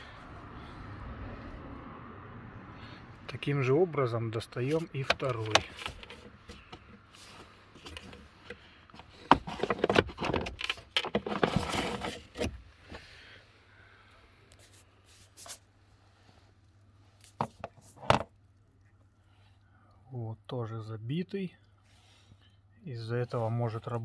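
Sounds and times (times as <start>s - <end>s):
plastic rustling and scraping: 4.6s - 13.1s, 14.6s - 15.7s.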